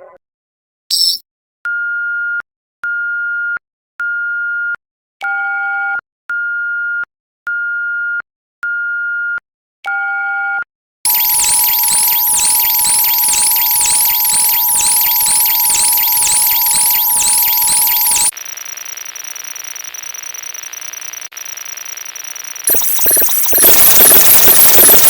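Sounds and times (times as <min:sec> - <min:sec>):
synthesized alert beeps: 0:11.1 - 0:18.3, 0:22.7 - 0:25.0.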